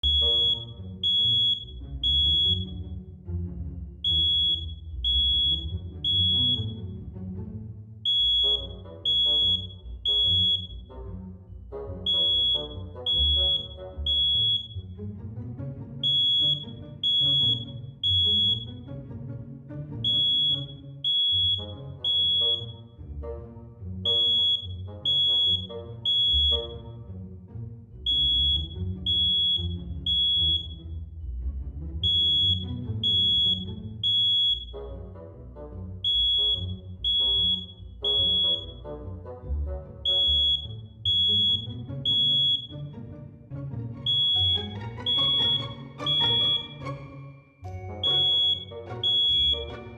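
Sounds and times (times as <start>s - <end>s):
smoke alarm beeping: 0.0s - 2.7s, 4.0s - 6.8s, 8.1s - 10.7s, 12.1s - 14.8s, 16.0s - 18.7s, 20.0s - 22.7s, 24.1s - 26.8s, 28.1s - 30.8s, 32.0s - 34.8s, 36.1s - 38.8s, 40.1s - 42.8s, 44.1s - 46.8s, 47.7s - 49.9s
background music: 0.0s - 49.9s.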